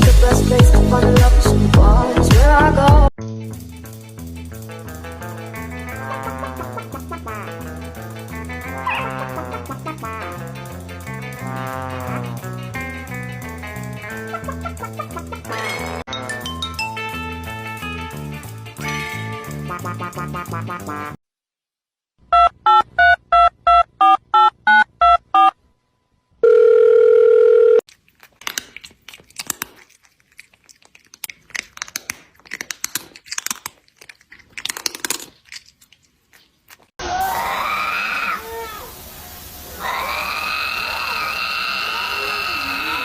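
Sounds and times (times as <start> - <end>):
telephone keypad beeps: 22.3 - 25.5
steady phone tone: 22.3 - 25.6, 26.4 - 27.9.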